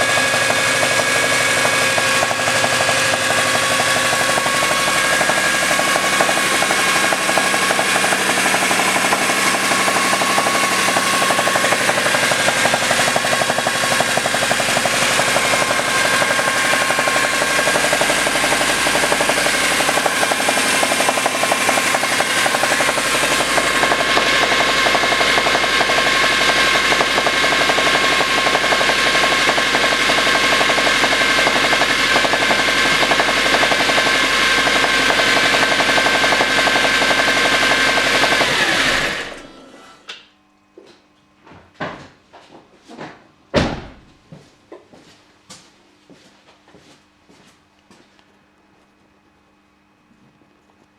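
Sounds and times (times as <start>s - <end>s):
fast knocking inside engine: 0.0s - 39.5s
petrol engine running: 0.0s - 40.0s.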